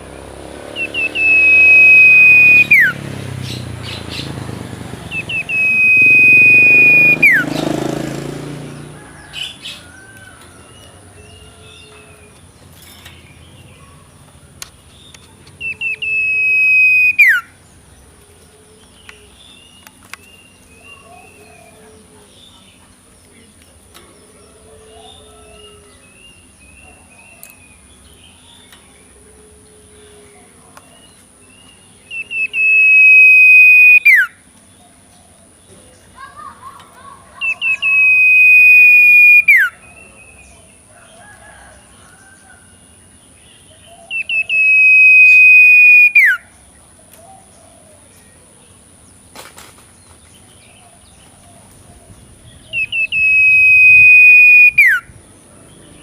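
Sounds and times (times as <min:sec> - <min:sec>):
owlet whistled calls: 0:00.8 - 0:03.0, 0:05.1 - 0:07.7, 0:15.6 - 0:17.5, 0:32.1 - 0:34.4, 0:37.4 - 0:40.1, 0:44.1 - 0:46.5, 0:52.6 - 0:55.1.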